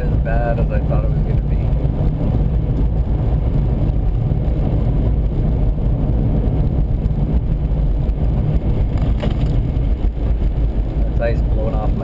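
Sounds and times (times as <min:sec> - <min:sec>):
car interior driving rumble: 0:00.0 - 0:12.0.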